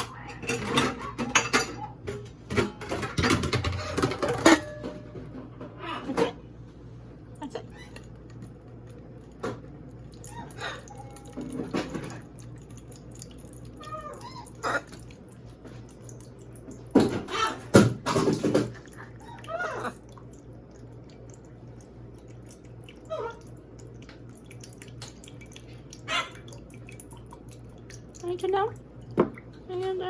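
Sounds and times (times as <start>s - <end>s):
water dripping and splashing: 7.3s - 30.0s.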